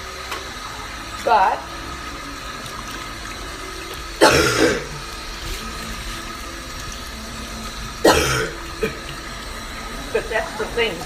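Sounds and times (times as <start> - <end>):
person clearing throat: 4.2 - 5.0, 8.0 - 9.0.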